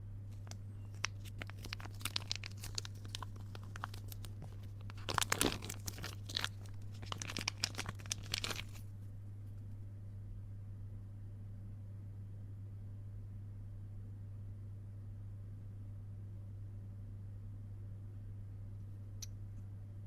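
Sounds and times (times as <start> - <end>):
steady low hum: 0.0 - 20.0
packaging being torn and crinkled: 0.4 - 8.9.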